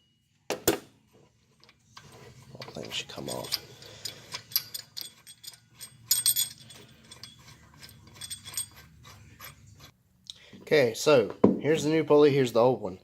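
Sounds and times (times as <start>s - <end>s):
metal parts clinking: 1.6s - 9.9s
metallic clatter: 1.6s - 9.9s.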